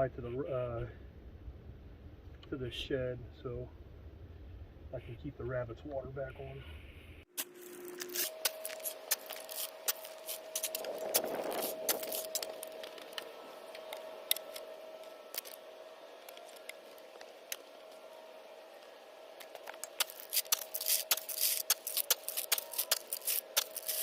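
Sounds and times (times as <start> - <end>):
gravel being shoveled: 7.3 - 13.3, 19.5 - 24.0.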